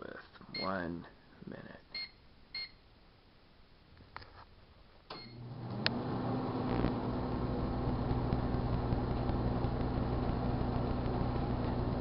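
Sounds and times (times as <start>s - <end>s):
keypad beep: 1.9s - 2.8s
microwave oven running hum: 5.2s - 12.0s.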